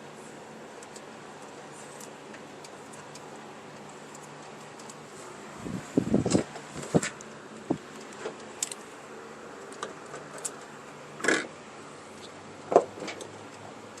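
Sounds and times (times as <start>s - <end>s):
light clicks and rustles: 6.2s - 8.9s.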